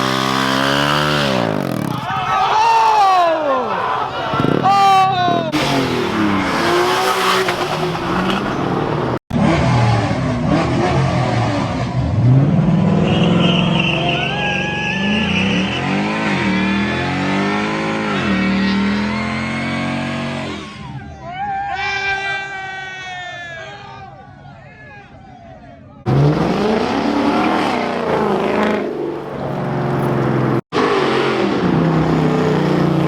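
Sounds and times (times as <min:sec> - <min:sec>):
car engines revving: 0:00.0 - 0:21.3, 0:26.0 - 0:33.0
high squeal: 0:13.0 - 0:17.2.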